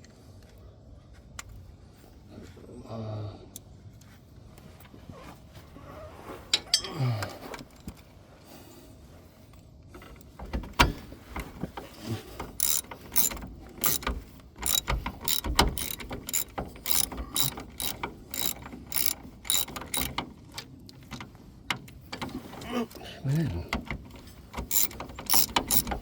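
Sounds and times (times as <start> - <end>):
ratchet wrench clicking: 12.5 - 20.3, 24.6 - 26.0.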